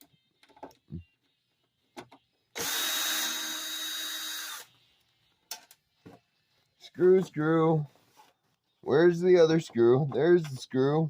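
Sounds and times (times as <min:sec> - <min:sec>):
power drill-driver running: 0:02.6 - 0:04.7.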